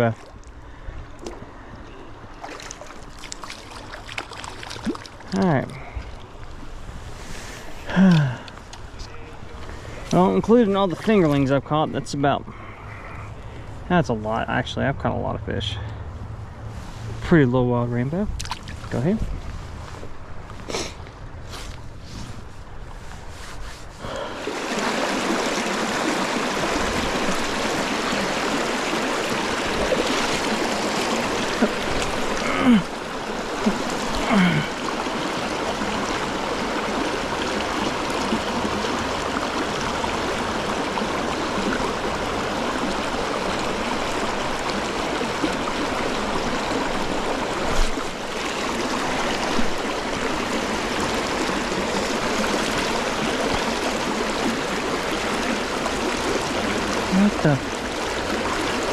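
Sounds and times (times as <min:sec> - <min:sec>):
stream rushing over rocks: 0:24.0 - 0:58.9.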